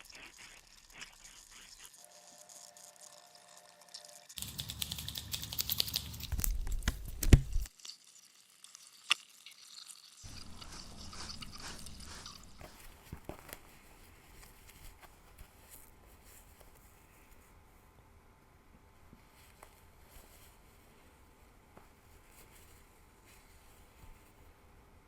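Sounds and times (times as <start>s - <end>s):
fingers scratching scalp and hair: 0.0s - 2.6s, 4.4s - 7.7s, 10.3s - 13.6s.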